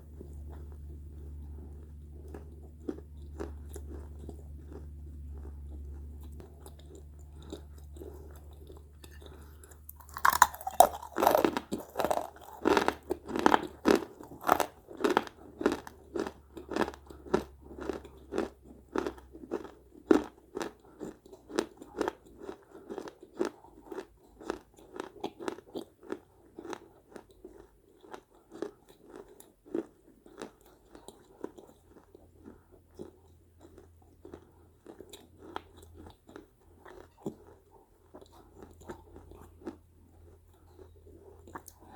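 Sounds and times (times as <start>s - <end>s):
faint low hum: 0.0s - 24.4s
chewing crunches: 0.0s - 41.9s.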